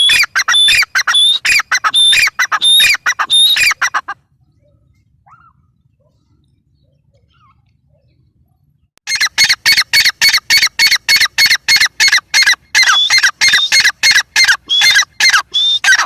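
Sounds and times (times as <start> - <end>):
bird calling harsh repeated notes: 0.0 - 4.2, 9.0 - 16.0.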